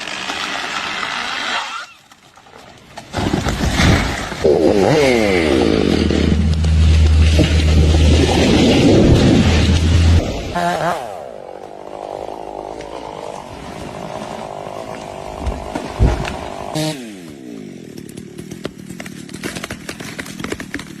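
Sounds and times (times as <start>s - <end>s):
chainsaw engine revving: 4.3s - 19.0s.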